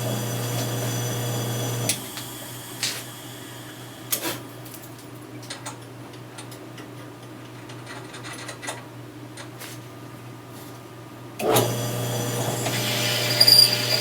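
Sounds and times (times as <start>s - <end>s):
tools clicking and tapping: 5.4s - 9.5s.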